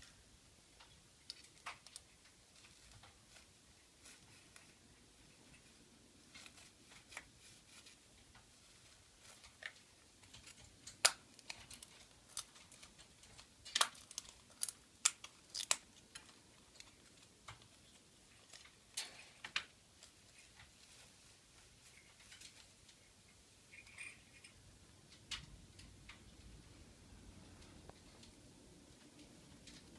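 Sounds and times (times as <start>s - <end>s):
wooden stick clicking and scratching: 0.8s - 21.2s.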